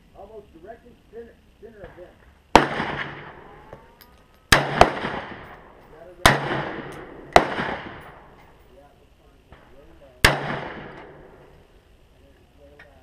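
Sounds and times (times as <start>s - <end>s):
rifle shots echoing: 1.8s - 8.5s, 9.5s - 11.6s.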